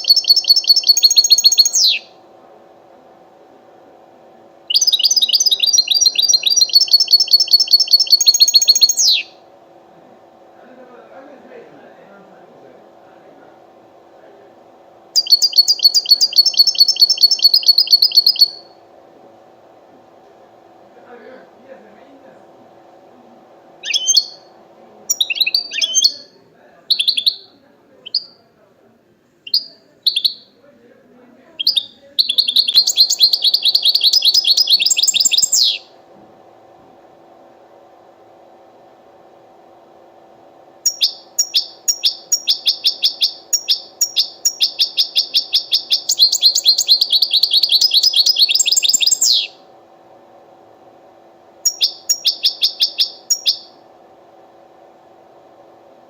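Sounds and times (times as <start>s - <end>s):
bird twittering song: 0.0s - 2.1s, 4.7s - 9.4s, 15.2s - 18.7s, 23.8s - 24.5s, 25.1s - 28.4s, 29.4s - 30.6s, 31.6s - 35.9s, 40.8s - 49.6s, 51.6s - 53.8s
finch singing trills: 0.0s - 2.1s, 4.7s - 9.4s, 15.2s - 18.7s, 23.8s - 24.5s, 25.1s - 28.4s, 29.5s - 30.5s, 31.6s - 35.9s, 40.9s - 49.6s, 51.6s - 53.8s
faint steady hum: 0.0s - 56.0s.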